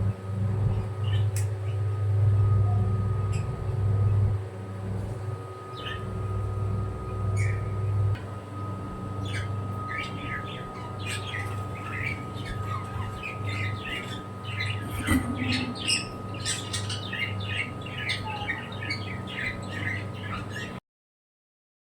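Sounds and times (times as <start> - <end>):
low hum: 0.0 - 20.2
pet birds chirping: 0.9 - 1.9, 5.7 - 6.2, 7.2 - 8.1, 9.0 - 20.8.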